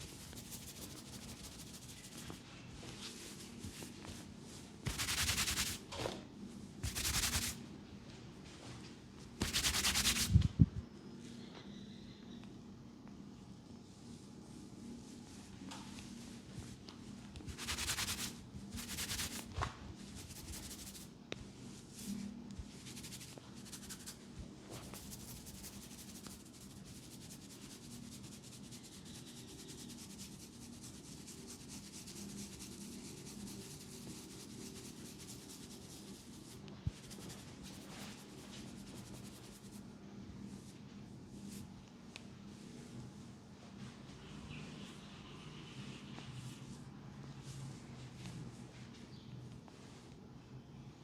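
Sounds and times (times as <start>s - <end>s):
hands rubbing skin and hair: 0.0s - 5.8s, 6.8s - 7.6s, 9.4s - 10.5s, 17.4s - 21.1s, 21.9s - 39.8s
rustling: 0.1s - 5.8s.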